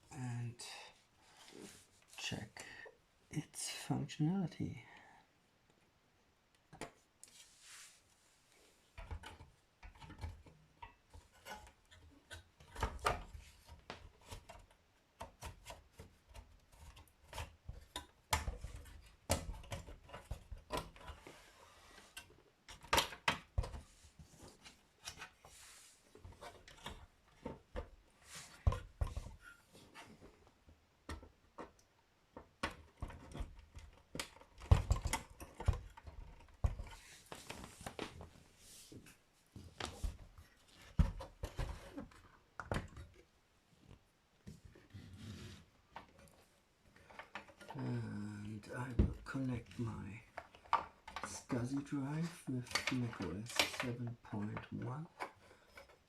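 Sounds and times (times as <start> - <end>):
plastic and metal parts clicking: 31.1 - 37.0, 50.3 - 56.0.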